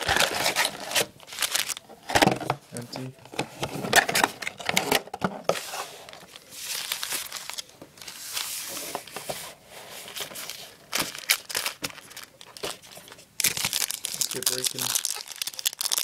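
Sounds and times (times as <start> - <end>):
plastic packaging crinkling and tearing: 0.0 - 3.1, 5.7 - 9.2, 10.1 - 16.0.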